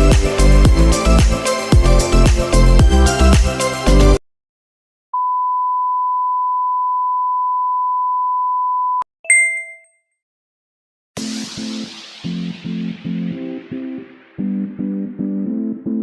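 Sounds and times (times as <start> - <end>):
short bright ding: 9.3 - 9.9.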